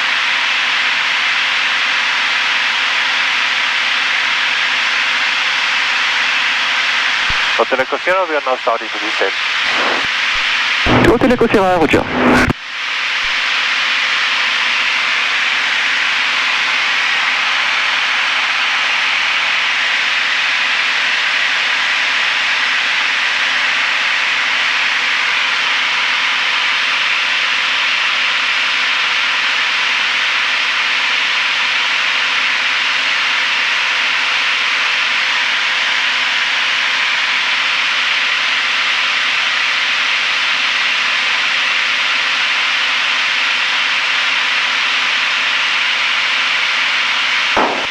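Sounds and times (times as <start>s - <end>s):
plane engine and propeller drone: 0.0s - 47.9s
airflow rushing in cabin: 9.6s - 12.6s.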